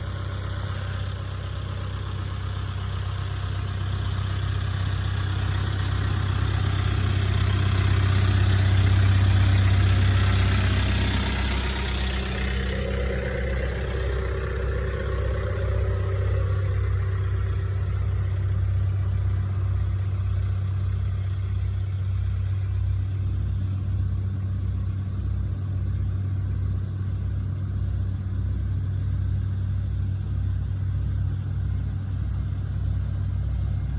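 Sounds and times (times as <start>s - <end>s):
diesel engines humming: 0.0s - 33.9s
high-pitched whine: 7.7s - 27.3s.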